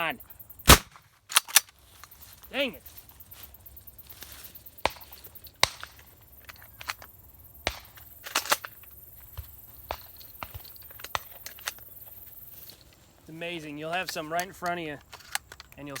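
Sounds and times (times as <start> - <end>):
shotgun reports: 0.0 - 1.0.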